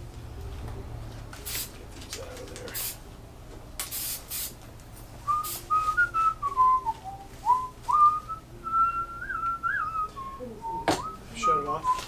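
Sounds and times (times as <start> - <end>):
person whistling a tune: 5.3 - 12.0.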